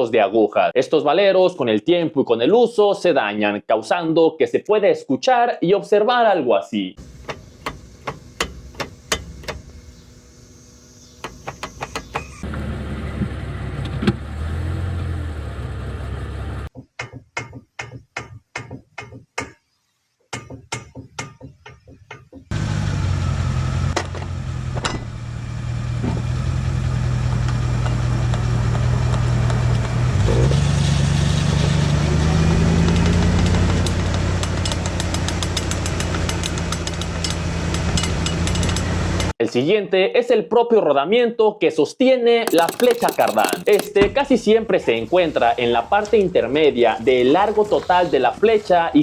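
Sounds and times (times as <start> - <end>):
rapid sharp clicks: 42.5 - 43.9
vehicle running: 42.5 - 43.9.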